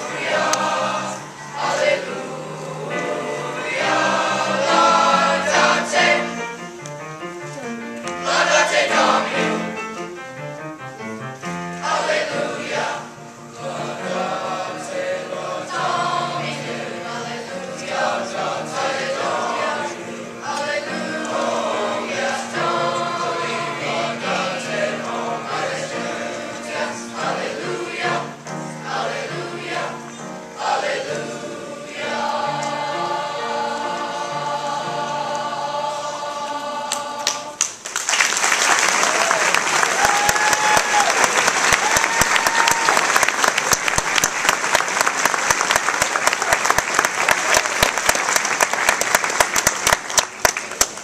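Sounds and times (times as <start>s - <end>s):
choir singing: 0.0s - 6.9s, 7.6s - 10.0s, 11.4s - 37.8s
audience applause: 37.2s - 51.0s.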